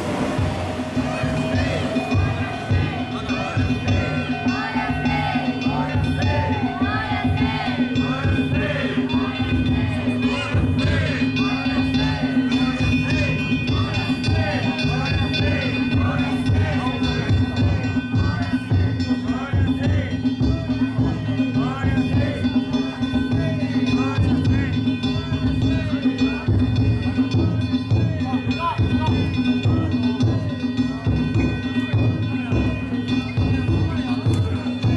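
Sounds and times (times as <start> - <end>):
crowd voices shouting: 0.0 - 12.8
drums beating: 0.0 - 34.9
sustained ringing tones: 0.0 - 34.9
voices calling: 0.0 - 34.9.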